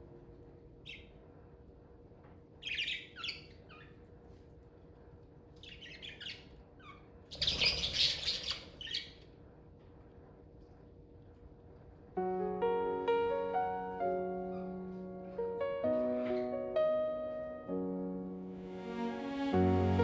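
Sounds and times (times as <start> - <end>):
budgerigars chirping: 2.6 - 3.9, 5.6 - 9.2.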